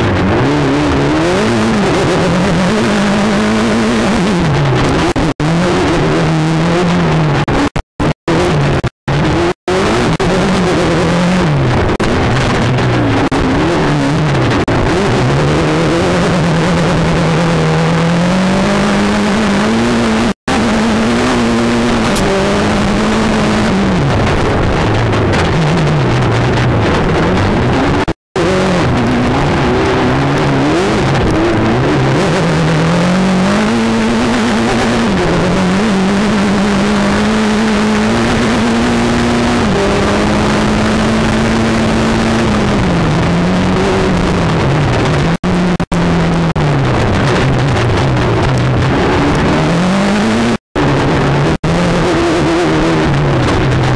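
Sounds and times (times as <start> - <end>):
turbocharged engine revving: 0.0 - 53.9
car interior rumble and rattle: 19.6 - 53.9.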